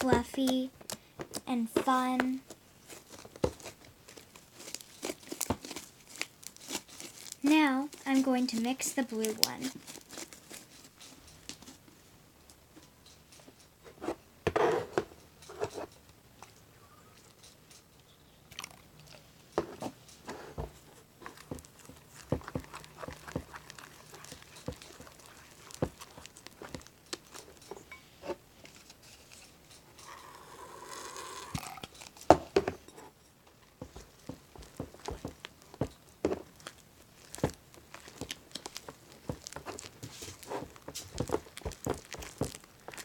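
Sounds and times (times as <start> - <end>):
slime squelching and popping: 21.2 - 27.7, 33.8 - 43.0.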